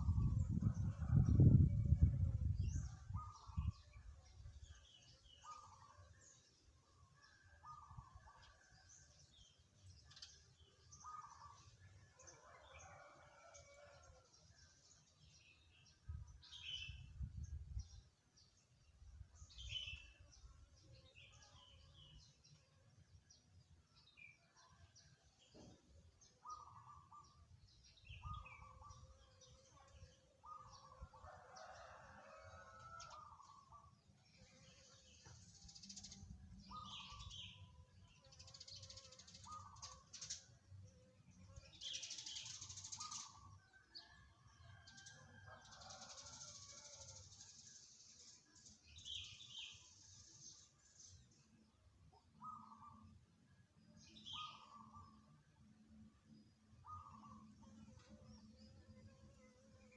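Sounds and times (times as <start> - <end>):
small birds chirping: 2.7 - 6.1, 33.2 - 40.6, 41.6 - 43.5.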